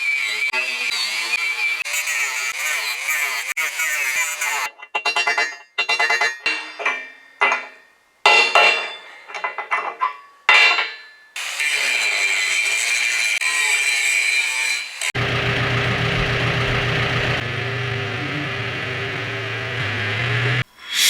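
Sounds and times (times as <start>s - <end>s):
hammer striking steel plate: 4.9s - 11.2s
power tool whining: 14.9s - 21.0s.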